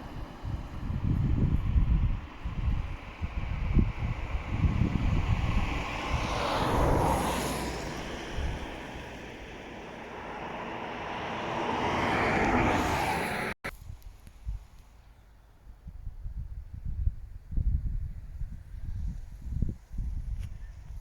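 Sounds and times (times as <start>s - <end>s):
passing vehicle rushing: 0.0s - 13.6s
wind buffeting microphone: 0.0s - 14.8s, 15.7s - 21.0s.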